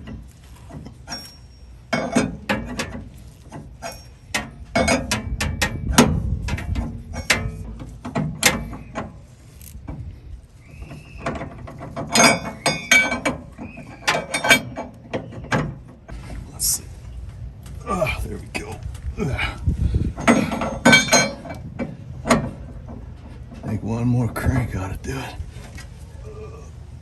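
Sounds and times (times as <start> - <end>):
hand ratchet clicking: 9.5 - 9.8.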